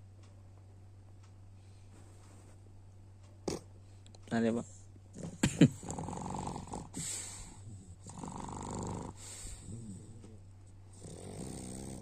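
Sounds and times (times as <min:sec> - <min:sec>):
soft breathing: 0:01.5 - 0:02.6, 0:06.8 - 0:08.2, 0:09.1 - 0:11.1
dog snoring: 0:05.2 - 0:12.0.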